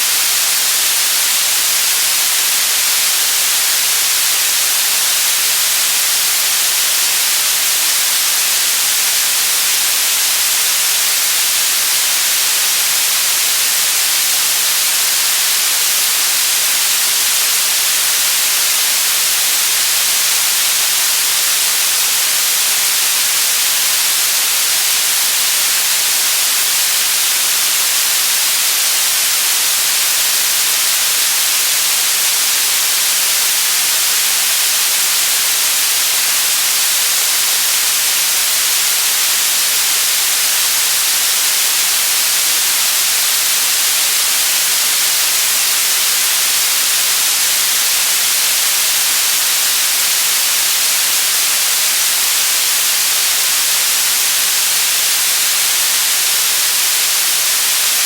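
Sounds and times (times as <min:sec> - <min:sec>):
white noise hiss: 0:00.0 - 0:58.0.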